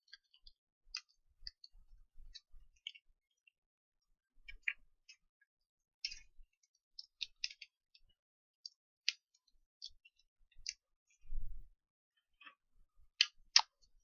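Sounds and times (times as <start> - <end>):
small clicks and taps: 0.0 - 3.6, 4.4 - 11.2.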